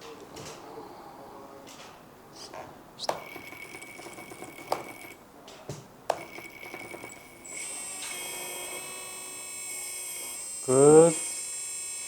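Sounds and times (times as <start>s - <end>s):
small hydraulic pump whining: 3.0s - 5.2s, 6.1s - 12.0s.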